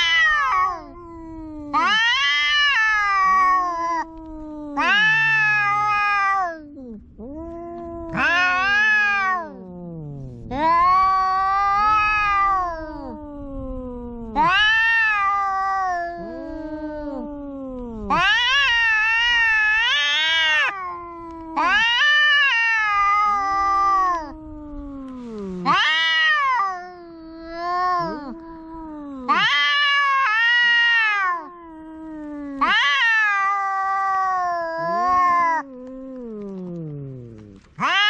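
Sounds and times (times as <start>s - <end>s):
cat yowling: 0.0s - 38.0s.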